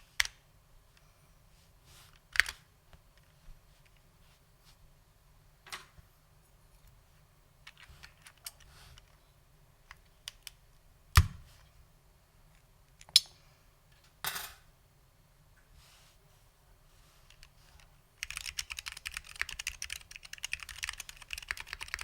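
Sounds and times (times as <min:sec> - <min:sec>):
keyboard keystrokes: 0:18.2 - 0:22.0.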